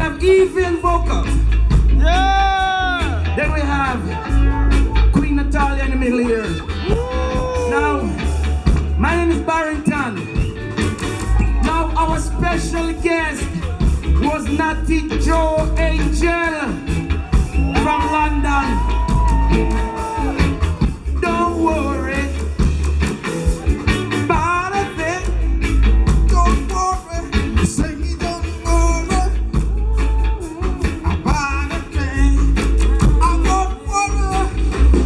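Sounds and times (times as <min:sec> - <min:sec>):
heavy pulsing bass line: 0:00.0 - 0:35.0
reggae band playing: 0:00.0 - 0:35.0
person singing: 0:19.0 - 0:22.5, 0:23.6 - 0:34.9.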